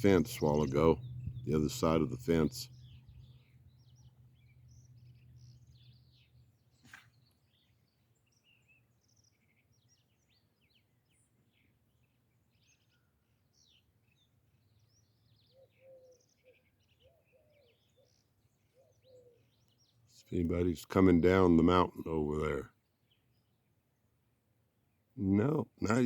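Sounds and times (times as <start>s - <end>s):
short low notes: 0.0s - 3.3s
small birds chirping: 0.0s - 26.0s.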